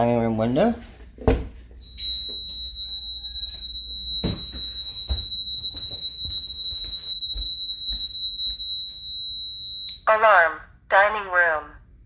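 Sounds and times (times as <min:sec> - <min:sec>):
high-pitched alarm tone: 0:01.8 - 0:10.1.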